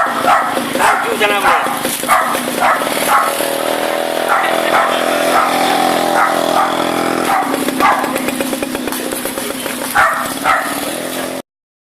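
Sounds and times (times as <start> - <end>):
dog barking: 0.0 - 3.4, 4.2 - 8.2, 9.9 - 10.8
small engine running: 0.0 - 11.4.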